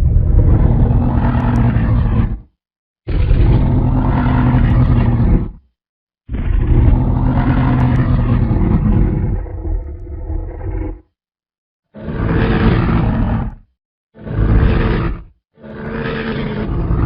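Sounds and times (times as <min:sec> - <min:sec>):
deep dinosaur roar: 0:00.0 - 0:02.5, 0:03.1 - 0:05.7, 0:06.3 - 0:11.1, 0:12.0 - 0:17.0.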